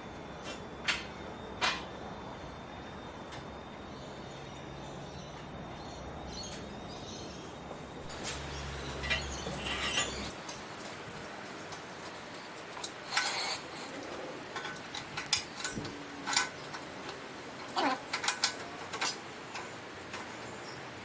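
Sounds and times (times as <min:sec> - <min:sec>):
metallic clanks and rattles: 0:08.1 - 0:10.6.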